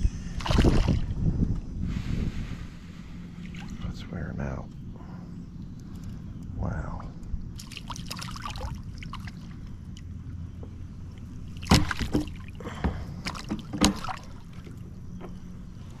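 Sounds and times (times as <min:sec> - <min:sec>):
water splashing: 0:00.4 - 0:01.1, 0:03.4 - 0:03.9, 0:07.6 - 0:10.0, 0:11.4 - 0:14.9
sharp knocks on a kayak: 0:11.6 - 0:14.3.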